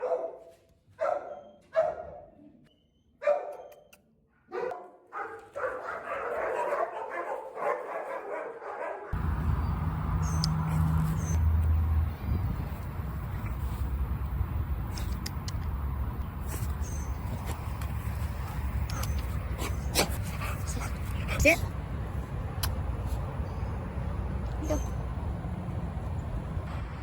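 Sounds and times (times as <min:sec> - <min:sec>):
dog barking: 0:00.0 - 0:02.4, 0:03.2 - 0:03.8, 0:04.5 - 0:09.2.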